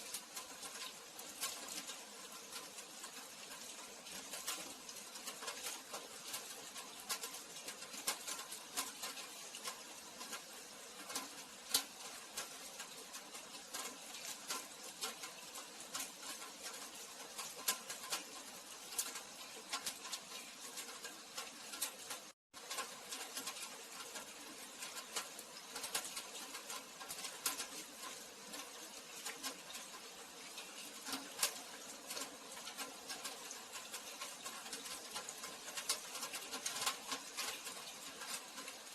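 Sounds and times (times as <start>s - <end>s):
drips and patters: 0.0s - 38.9s
rain falling: 0.0s - 38.9s.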